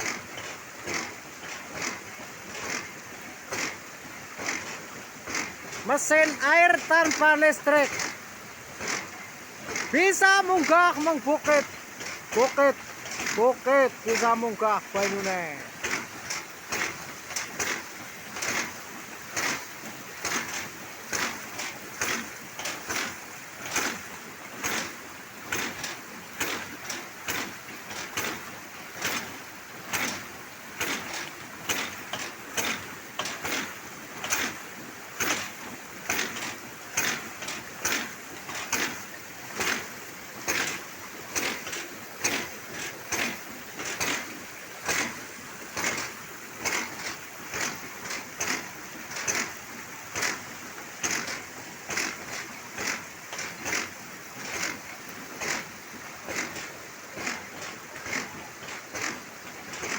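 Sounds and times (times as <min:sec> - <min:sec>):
pump valve knocking shut: 0:20.2 - 0:49.5.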